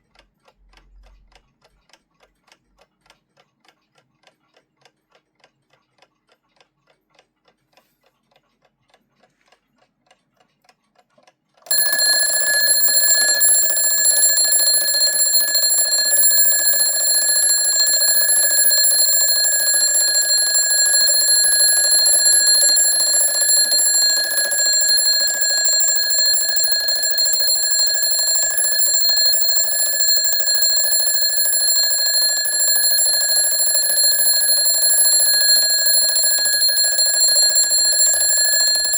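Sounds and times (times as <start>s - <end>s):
alarm bell ringing: 11.7s - 38.9s
alarm clock ticking: 11.7s - 38.9s.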